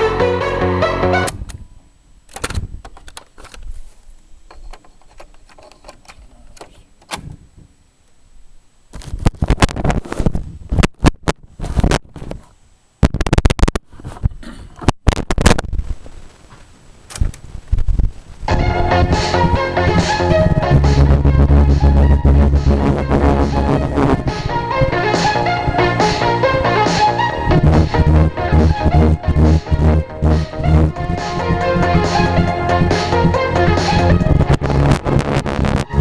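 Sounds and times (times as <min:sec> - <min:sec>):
clicks and knocks of boombox controls: 0:13.0 - 0:13.9, 0:14.8 - 0:15.8, 0:18.5 - 0:36.0.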